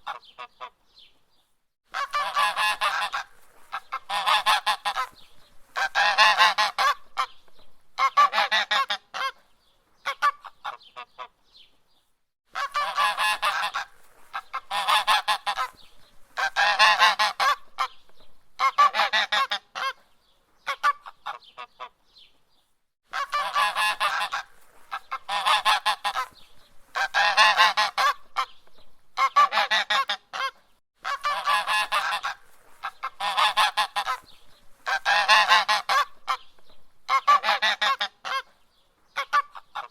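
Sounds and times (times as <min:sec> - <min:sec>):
goose honking: 0:01.9 - 0:07.3, 0:08.0 - 0:09.4, 0:12.6 - 0:15.8, 0:16.4 - 0:18.0, 0:18.6 - 0:20.0, 0:23.1 - 0:28.5, 0:29.2 - 0:36.4, 0:37.1 - 0:38.5.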